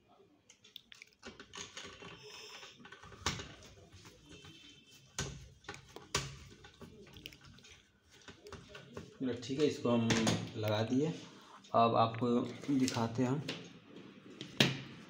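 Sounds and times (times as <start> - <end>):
small parts and tools rattling: 0.6 - 3.6.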